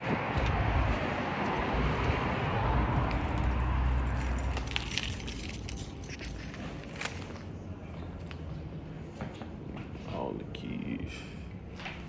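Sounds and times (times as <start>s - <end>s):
keys jangling: 3.3s - 7.5s.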